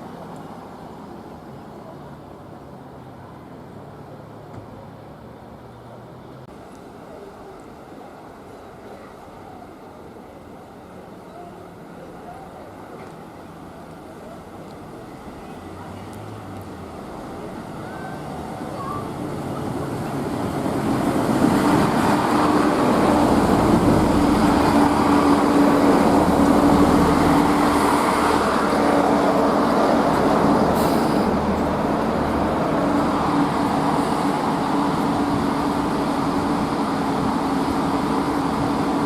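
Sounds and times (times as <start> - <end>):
diesel train passing: 0.0 - 39.0.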